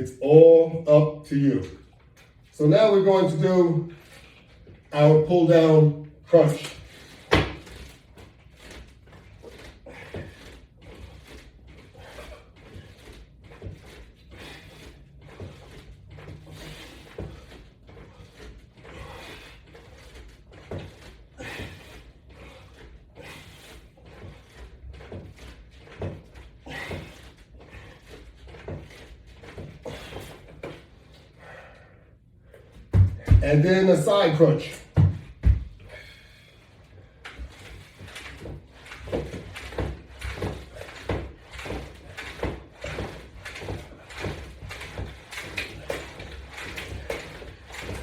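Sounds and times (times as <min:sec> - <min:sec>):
exercise gear knocks and clicks: 0:06.6 - 0:31.2, 0:32.7 - 0:33.6, 0:34.7 - 0:36.2, 0:37.2 - 0:48.0.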